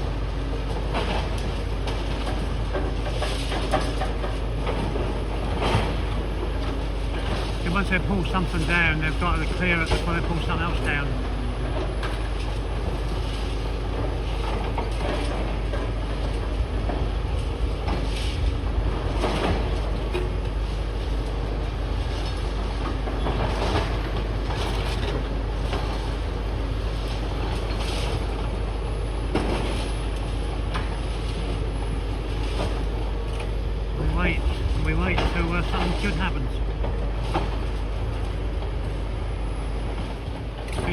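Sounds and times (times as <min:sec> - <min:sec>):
excavator rumble: 0:00.0 - 0:40.9.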